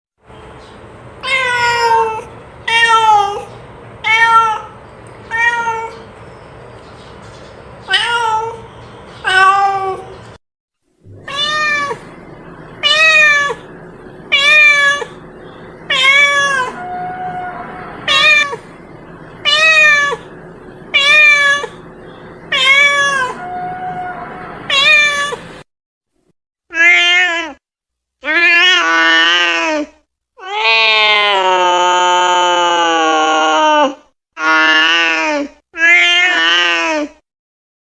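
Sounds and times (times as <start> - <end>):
cat meowing: 1.2 - 6.1, 7.9 - 10.1, 11.1 - 12.1, 12.8 - 13.7, 14.3 - 15.2, 15.8 - 18.7, 19.4 - 20.3, 20.9 - 21.8, 22.5 - 25.5, 26.7 - 27.6, 28.2 - 31.7, 35.8 - 37.1.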